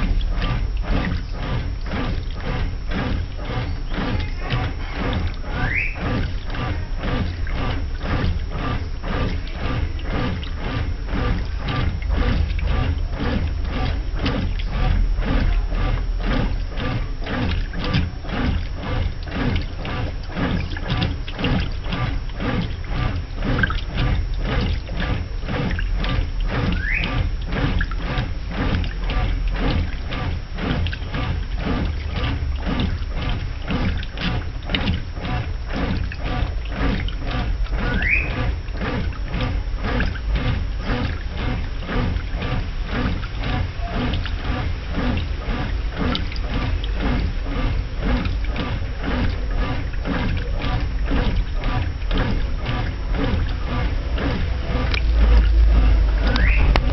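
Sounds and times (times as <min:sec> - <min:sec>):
low motor rumble: 0:00.0 - 0:56.9
washing machine sloshing: 0:00.0 - 0:56.9
short rising squeak: 0:03.6 - 0:06.2, 0:26.8 - 0:27.2, 0:37.8 - 0:38.4, 0:56.3 - 0:56.8.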